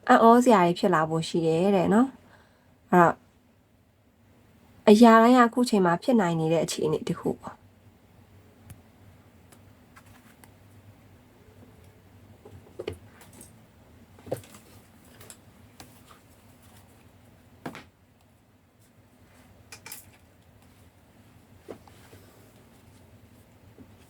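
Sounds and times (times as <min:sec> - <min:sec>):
faint low room hum: 0:00.0 - 0:24.0
cards and book knocking on table: 0:17.6 - 0:17.9.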